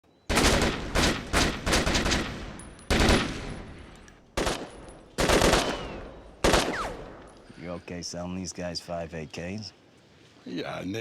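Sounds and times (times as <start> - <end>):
rifle gunfire with echo: 0.3 - 3.8, 4.4 - 7.2.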